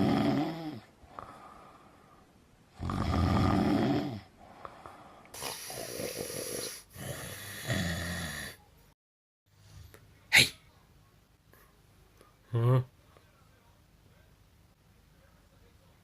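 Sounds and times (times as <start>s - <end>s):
person snoring loudly: 0.0s - 0.9s, 2.8s - 4.3s, 5.4s - 8.6s.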